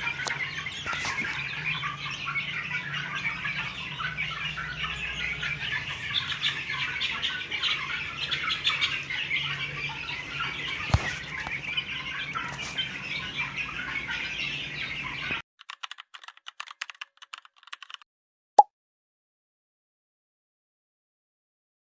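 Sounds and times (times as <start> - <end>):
hens clucking and squawking: 0.0 - 15.4.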